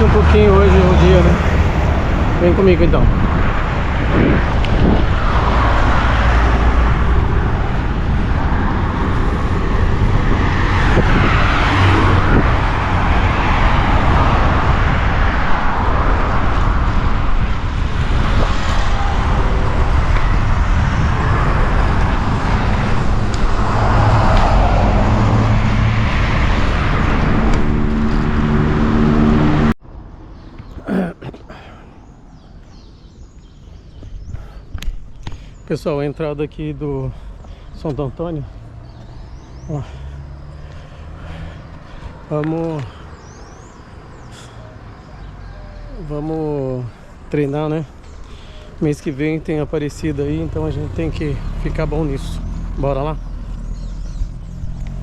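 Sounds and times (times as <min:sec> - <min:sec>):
vehicle engine humming: 0:00.0 - 0:10.7, 0:18.7 - 0:29.8, 0:36.6 - 0:45.4, 0:49.8 - 0:55.0
wind rumble on microphone: 0:00.0 - 0:29.8, 0:52.5 - 0:55.0
cars passing: 0:00.0 - 0:55.0.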